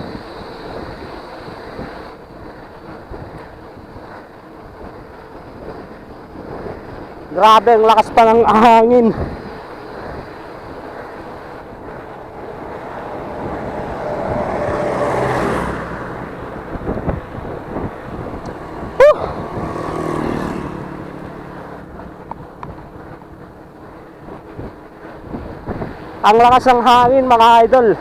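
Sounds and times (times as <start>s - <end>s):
engine hum: 0.0s - 26.8s
wind on microphone: 0.0s - 28.0s
highway traffic passing: 0.1s - 28.0s
short rising-pitched sound: 10.5s - 24.2s.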